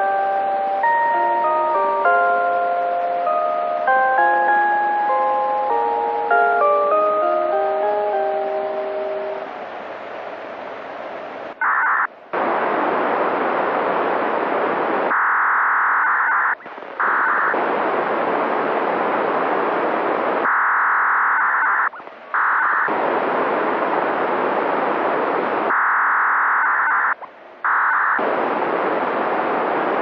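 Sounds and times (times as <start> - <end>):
steady mid-pitched tone: 0.0 - 10.3
radio static hiss: 7.0 - 30.0.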